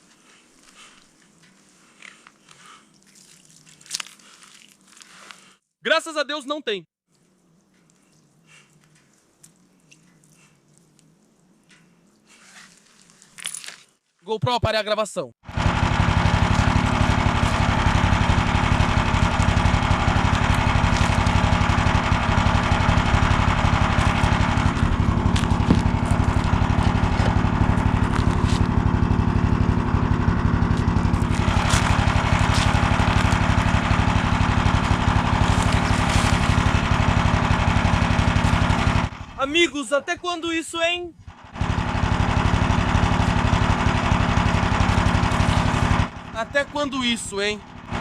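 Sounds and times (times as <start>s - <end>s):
small engine puttering: 15.4s - 39.7s, 41.2s - 48.0s.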